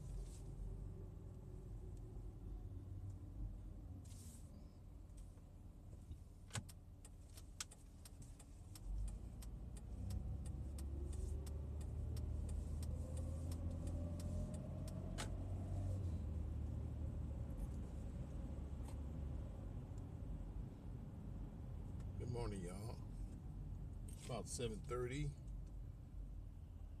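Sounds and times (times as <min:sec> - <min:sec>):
car engine accelerating: 0:08.6 - 0:19.8.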